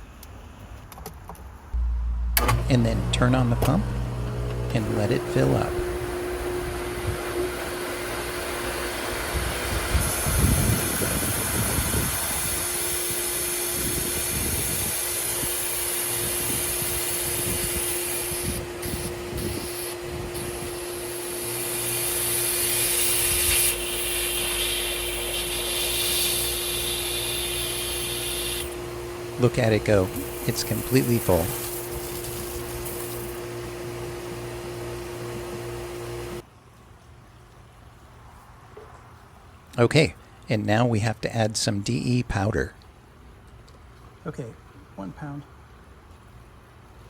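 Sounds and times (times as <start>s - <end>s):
pool pump humming: 1.8s - 38.1s
high hiss: 9.3s - 28.8s.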